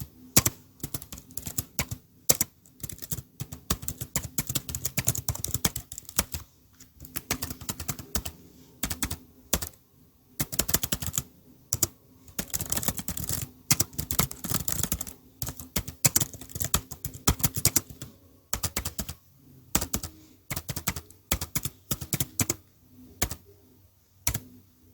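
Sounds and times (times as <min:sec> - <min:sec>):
keyboard key clicks: 0:11.8 - 0:19.2, 0:24.3 - 0:24.5.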